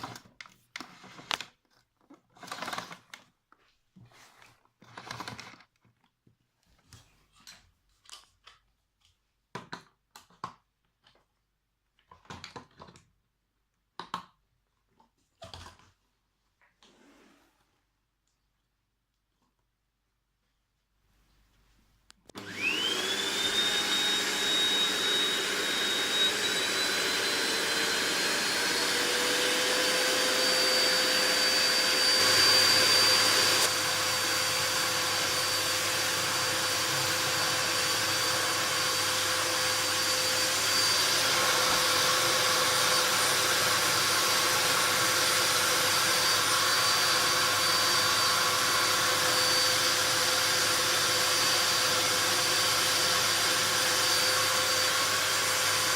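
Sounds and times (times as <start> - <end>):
vacuum cleaner whining: 22.3 - 55.9.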